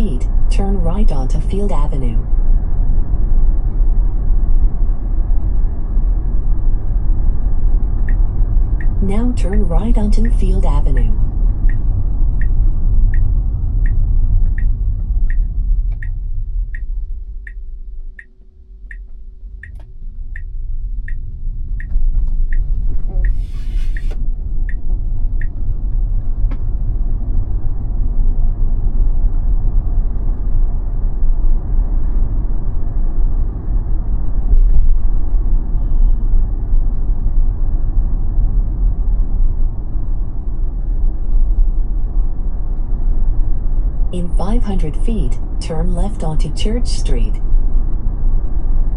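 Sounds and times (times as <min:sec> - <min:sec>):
turn signal ticking: 0:07.9 - 0:25.8.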